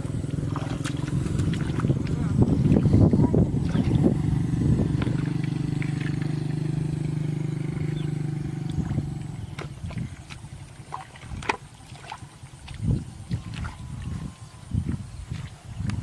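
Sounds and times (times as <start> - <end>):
small engine running: 0.0 - 9.8.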